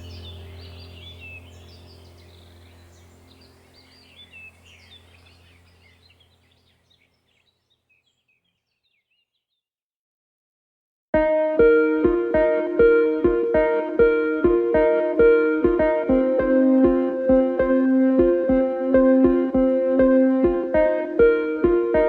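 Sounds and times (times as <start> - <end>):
steady low hum: 0.0 - 6.6, 11.2 - 22.0
birds chirping: 0.0 - 9.6.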